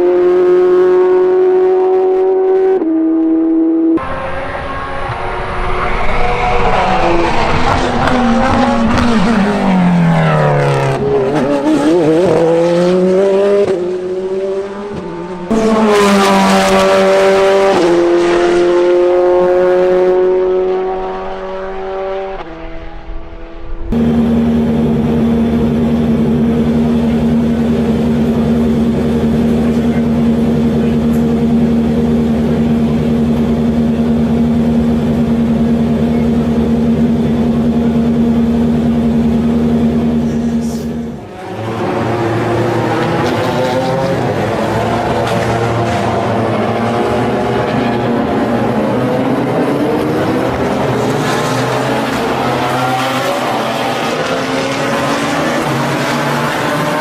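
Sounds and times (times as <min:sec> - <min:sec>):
race car engine revving: 0:00.0 - 0:57.0
steady engine drone: 0:00.0 - 0:57.0
race car passing by: 0:04.0 - 0:24.2, 0:38.7 - 0:57.0.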